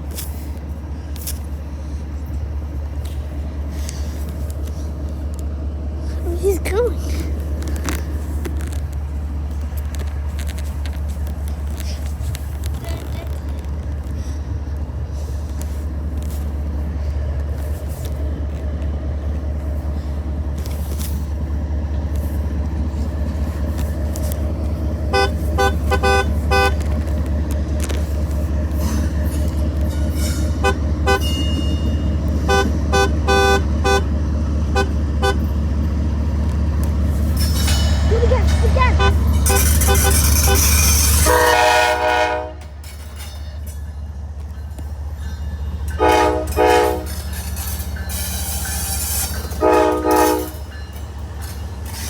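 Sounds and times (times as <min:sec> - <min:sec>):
car horn short toots: 0:25.1 - 0:26.8, 0:32.4 - 0:34.1, 0:34.8 - 0:35.5, 0:38.8 - 0:42.7, 0:46.0 - 0:47.1, 0:49.6 - 0:50.6.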